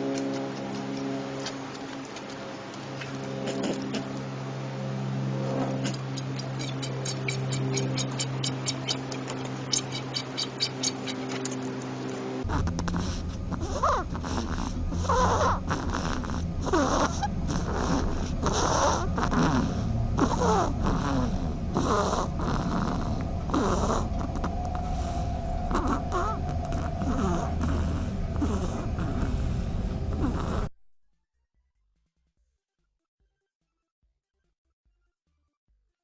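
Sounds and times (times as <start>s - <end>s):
steady hum: 0.0s - 30.7s
animal giving breathy cries: 3.4s - 4.2s, 5.5s - 11.8s, 12.4s - 30.7s.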